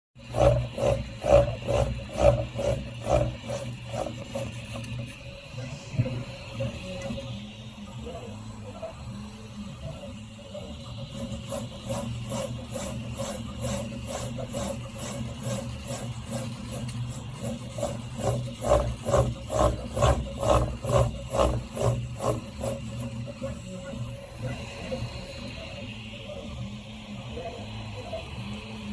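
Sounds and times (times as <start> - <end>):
printer rattle: 0.2 - 6.2, 10.8 - 23.7
steady hum: 0.2 - 28.9
stepper motors whirring: 0.2 - 28.9.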